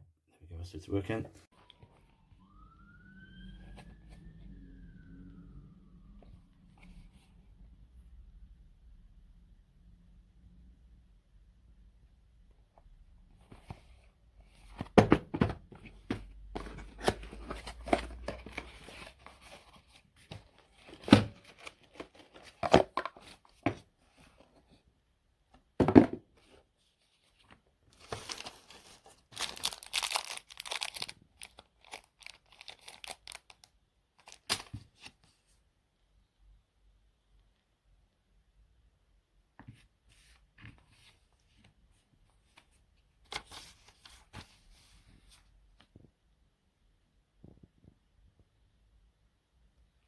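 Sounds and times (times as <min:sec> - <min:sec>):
rustling and crinkling: 0:13.4 - 0:24.9, 0:26.3 - 0:35.5.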